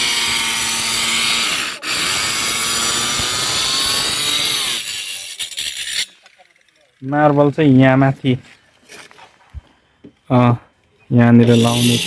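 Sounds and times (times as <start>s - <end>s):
marble cutter grinding: 0.0s - 7.0s, 11.4s - 12.0s.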